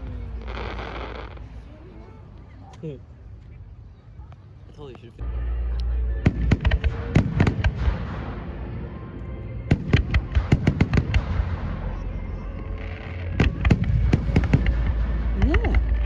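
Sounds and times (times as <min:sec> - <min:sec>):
fireworks bangs and crackles: 0:00.0 - 0:01.8, 0:06.2 - 0:16.0
steady low rumble: 0:00.0 - 0:16.0.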